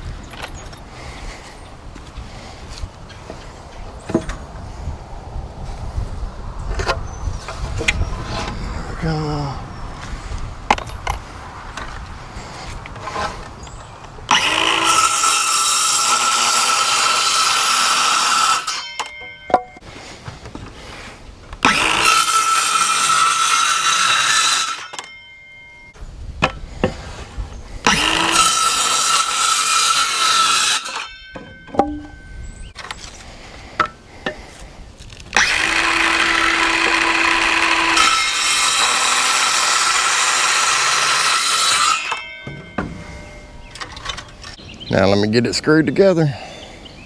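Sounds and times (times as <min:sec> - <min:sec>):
power saw cutting wood: 0:12.6 - 0:13.5, 0:14.3 - 0:19.2, 0:21.6 - 0:25.1, 0:27.8 - 0:31.2, 0:35.3 - 0:44.6
boards clicking and knocking: 0:31.4 - 0:32.2.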